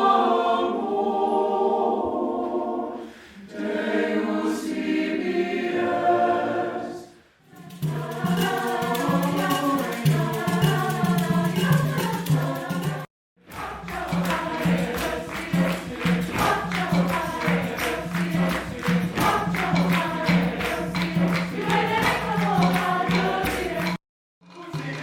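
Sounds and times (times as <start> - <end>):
mixed chorus singing: 0.0 - 25.0
percussion steady beat: 7.5 - 25.0.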